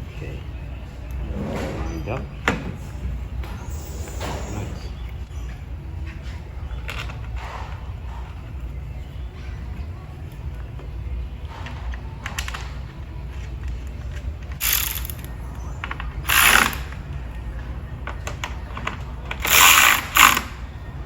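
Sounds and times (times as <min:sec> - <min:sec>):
ratchet wrench clicking: 0:14.6 - 0:15.3, 0:16.3 - 0:17.0, 0:19.4 - 0:20.6.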